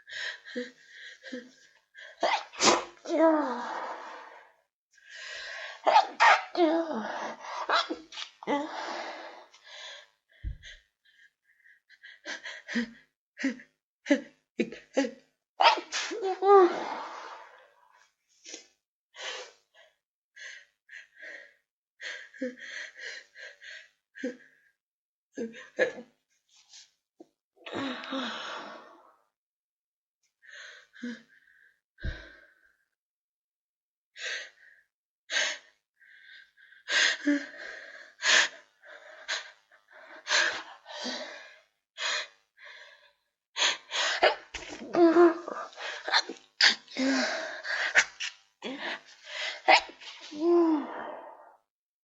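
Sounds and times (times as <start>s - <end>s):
person sneezing: 2.2s - 3.0s, 5.9s - 6.6s, 15.6s - 16.5s.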